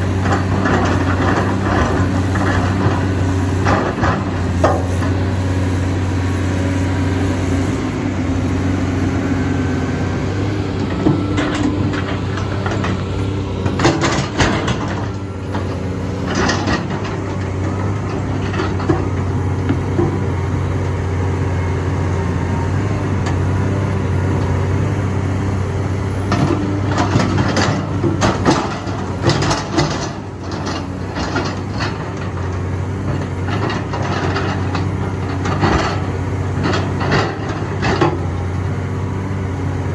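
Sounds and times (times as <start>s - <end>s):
diesel engine running: 0.0s - 39.9s
clanks and knocks: 0.1s - 5.3s, 10.9s - 20.2s, 26.3s - 38.6s.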